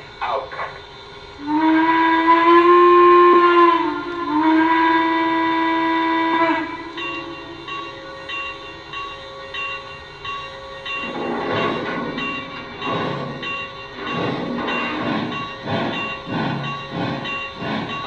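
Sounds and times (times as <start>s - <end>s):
steam whistle blasts: 0.0s - 9.0s
locomotive bell ringing: 0.0s - 18.0s
rush of steam: 0.0s - 18.0s.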